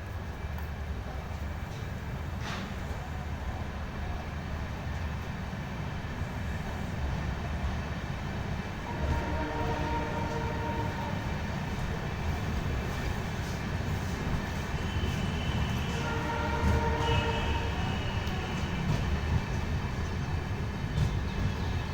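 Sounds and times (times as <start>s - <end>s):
train rumbling: 0.0s - 21.9s
train horn chord: 8.8s - 11.4s, 14.7s - 18.9s.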